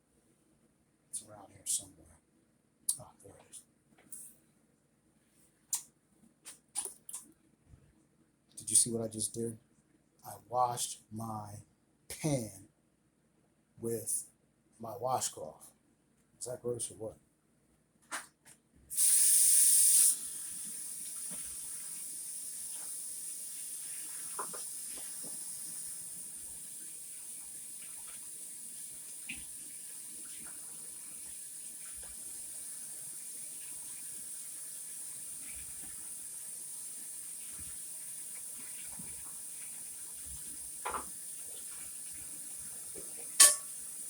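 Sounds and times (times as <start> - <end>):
faucet running into sink: 19.0 - 44.0.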